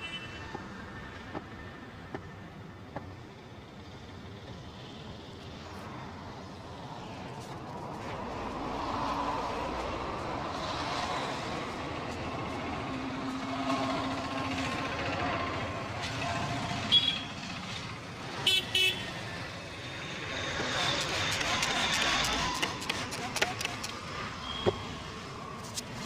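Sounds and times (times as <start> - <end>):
street traffic passing: 0.0 - 26.0
vehicle horn toots: 18.5 - 19.1.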